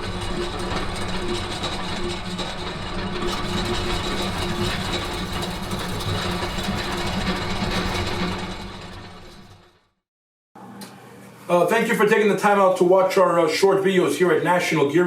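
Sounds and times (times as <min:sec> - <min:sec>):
gearbox humming with high whine: 0:00.0 - 0:09.7.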